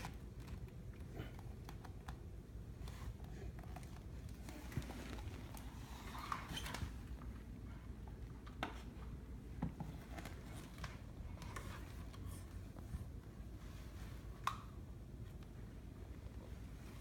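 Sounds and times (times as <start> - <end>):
rustling of small objects: 3.1 - 7.4.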